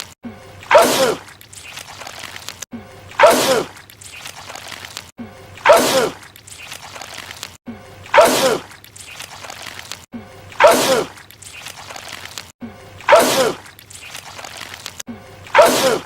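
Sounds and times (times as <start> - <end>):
man sneezing loudly: 15.6 - 16.0.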